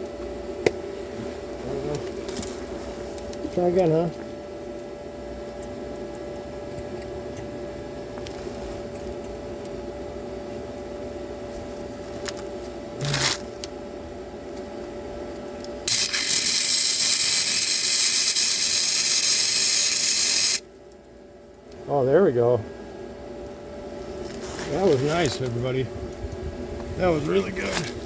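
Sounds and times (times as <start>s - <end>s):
steady hum: 0.0s - 28.0s
welding arc crackling: 15.9s - 20.6s.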